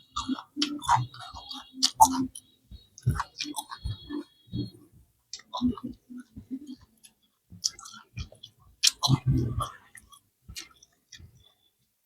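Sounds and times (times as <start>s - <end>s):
person chewing crunchy food: 7.6s - 9.4s.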